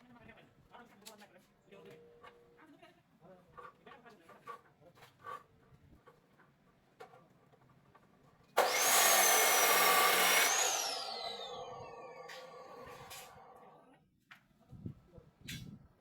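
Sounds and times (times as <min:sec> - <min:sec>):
power tool whining: 0:08.6 - 0:13.7.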